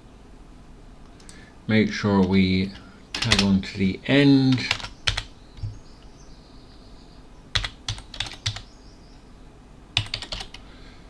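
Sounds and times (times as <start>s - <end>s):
keyboard key clicks: 2.7s - 3.8s, 4.6s - 5.8s.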